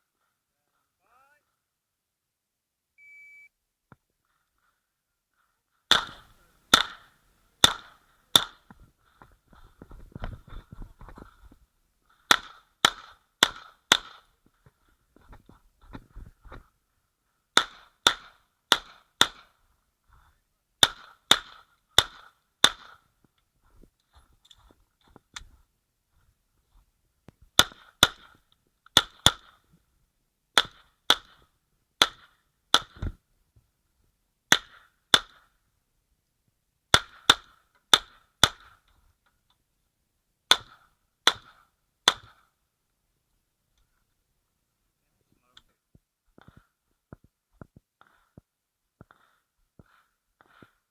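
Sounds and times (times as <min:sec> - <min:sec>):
pistol shots: 0:05.9 - 0:08.6.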